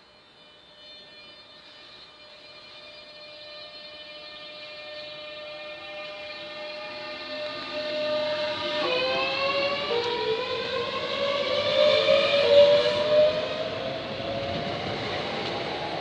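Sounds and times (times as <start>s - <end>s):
electric train inverter tones: 0.0s - 16.0s.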